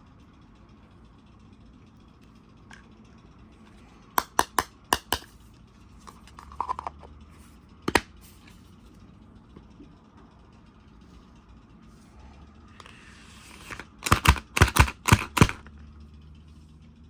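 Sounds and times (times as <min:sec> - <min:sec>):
toy packaging handled: 0:13.5 - 0:14.8
sharp clicks: 0:13.7 - 0:15.6.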